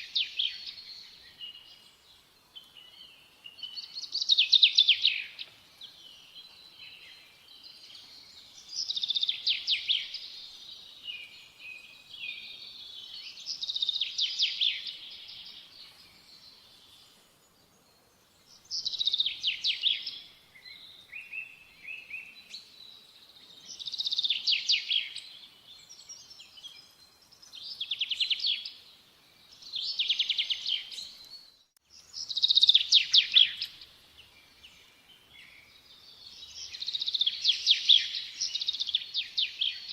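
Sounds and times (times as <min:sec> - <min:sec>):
soft bird chirps: 0:00.0 - 0:39.9.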